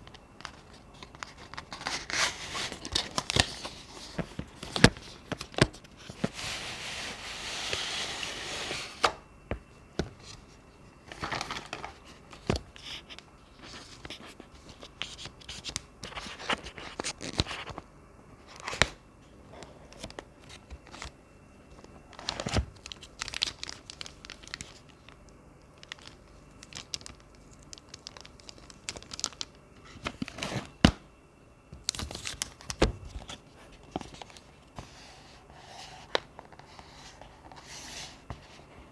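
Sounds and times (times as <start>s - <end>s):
packaging tearing and rustling: 0.4s - 9.1s, 22.2s - 24.9s, 25.8s - 30.8s.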